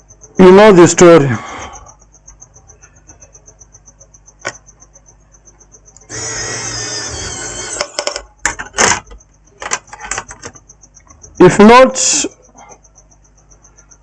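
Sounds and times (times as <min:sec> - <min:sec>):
rapid high-pitched ticking: 0:00.0 - 0:07.8, 0:10.5 - 0:14.0
small tool whirring: 0:05.9 - 0:09.0
clicks and handling noises: 0:07.8 - 0:11.2.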